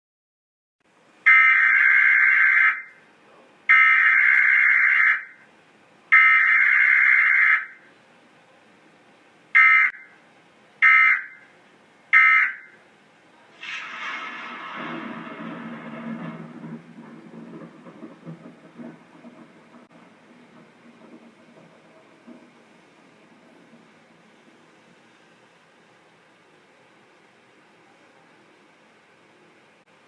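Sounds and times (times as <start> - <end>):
wide rushing noise: 13.5 - 24.3.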